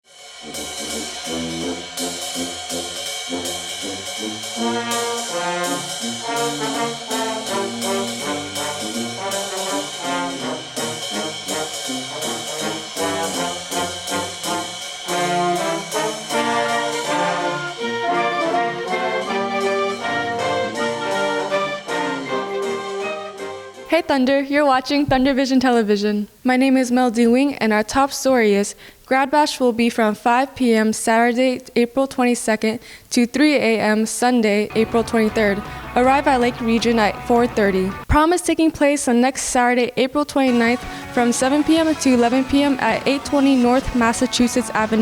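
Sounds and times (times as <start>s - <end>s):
brass intro music: 0.0s - 23.9s, 34.7s - 38.1s, 40.5s - 45.0s.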